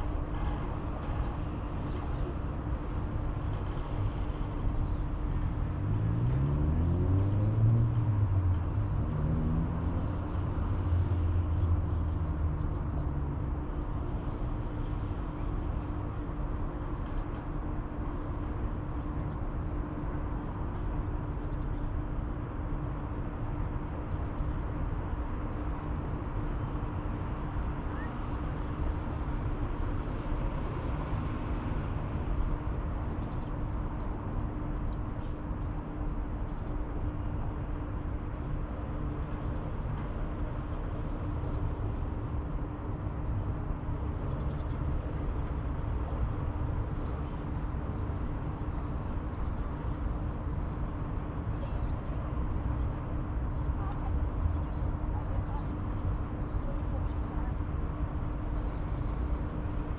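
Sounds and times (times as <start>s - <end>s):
distant traffic rumble: 0.0s - 59.9s.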